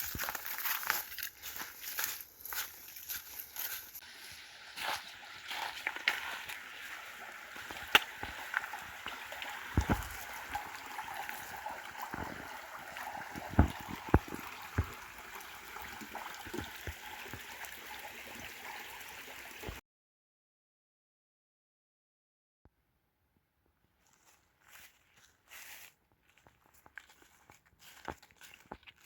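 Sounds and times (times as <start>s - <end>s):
stream babbling: 4.1s - 19.8s.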